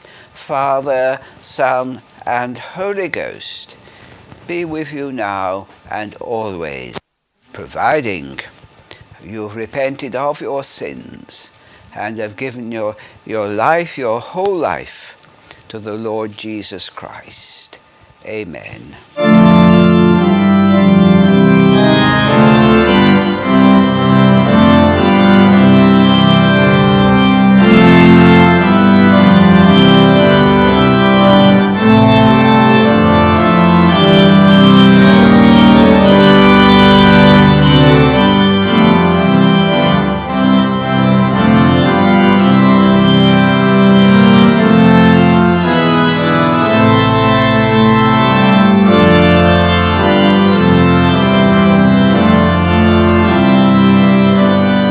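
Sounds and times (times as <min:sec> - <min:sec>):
organ chords: 0:00.0 - 0:03.1, 0:19.2 - 0:54.9.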